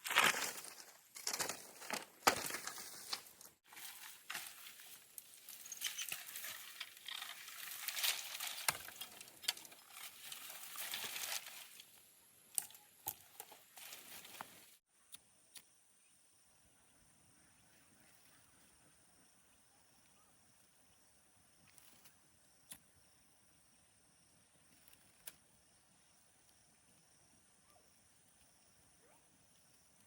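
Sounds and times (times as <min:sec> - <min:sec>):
dry vegetation rustling and crunching: 0:00.0 - 0:14.8.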